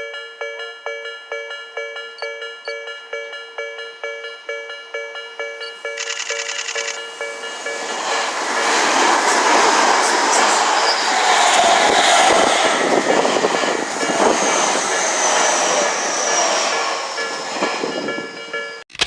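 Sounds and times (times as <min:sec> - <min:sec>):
train rushing past: 0:05.8 - 0:18.8.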